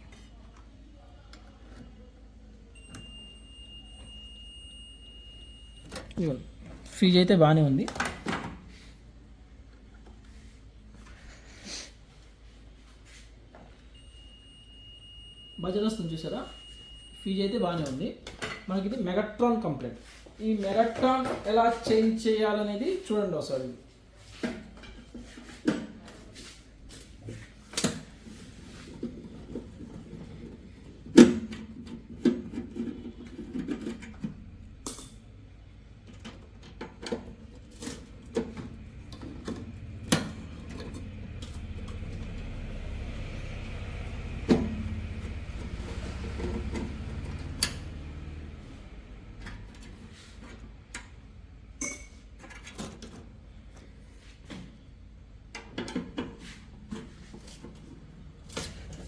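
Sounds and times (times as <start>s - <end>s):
tools clicking and knocking on metal: 51.8s - 53.3s, 55.5s - 56.4s.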